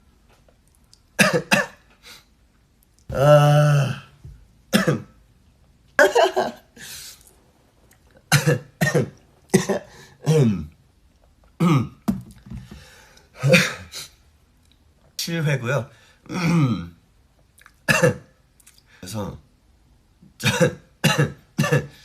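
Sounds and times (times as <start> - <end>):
man coughing: 1.2 - 1.8, 4.7 - 5.1, 8.3 - 10.6, 13.4 - 14.0, 17.9 - 18.2, 20.4 - 22.0.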